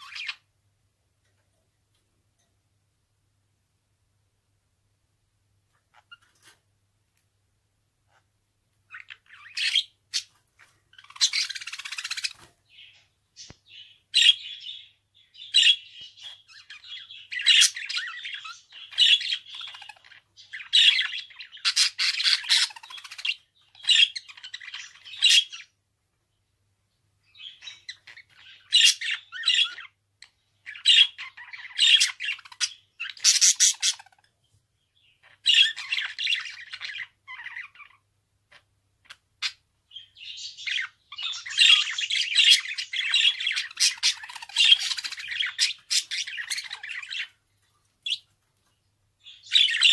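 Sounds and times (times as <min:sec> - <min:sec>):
budgerigar chattering: 0:30.7 - 0:34.3, 0:40.6 - 0:47.3.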